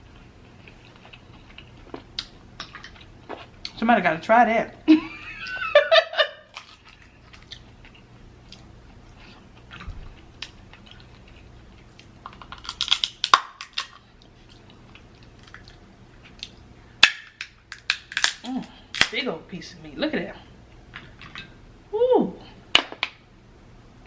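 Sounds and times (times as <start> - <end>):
person chewing: 0.0 - 3.8, 6.5 - 16.7
crab shells cracking: 11.9 - 14.0, 17.0 - 19.2.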